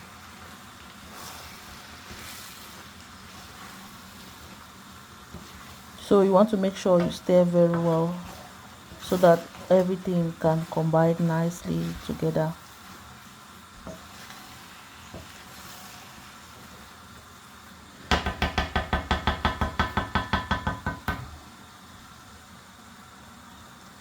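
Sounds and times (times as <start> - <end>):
faint background hum: 0.0 - 24.0
metal spoon knocking on pot: 18.1 - 21.4.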